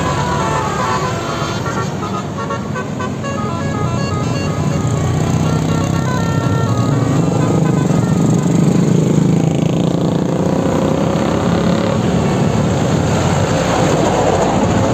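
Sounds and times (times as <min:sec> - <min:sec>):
diesel bus engine running: 0:00.0 - 0:10.7.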